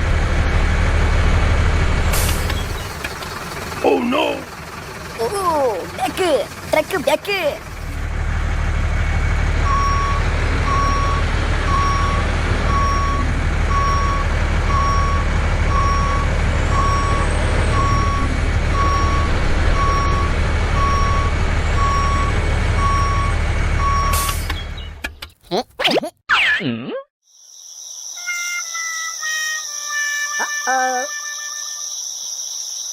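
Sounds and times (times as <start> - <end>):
truck engine running: 0.0 - 25.3
reversing alarm beeping: 9.6 - 24.4.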